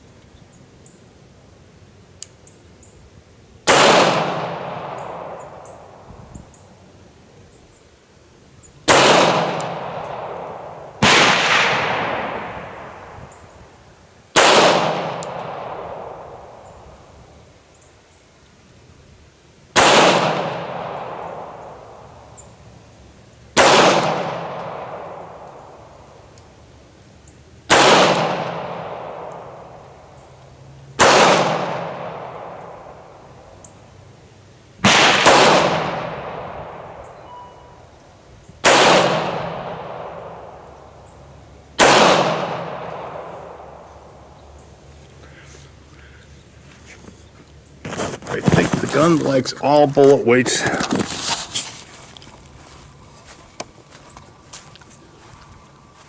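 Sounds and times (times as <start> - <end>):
pistol shots with echo: 3.7 - 6.0, 8.9 - 13.1, 14.4 - 16.6, 19.8 - 22.0, 23.6 - 25.8, 27.7 - 29.8, 31.0 - 33.1, 34.8 - 37.2, 38.6 - 40.6, 41.8 - 43.8.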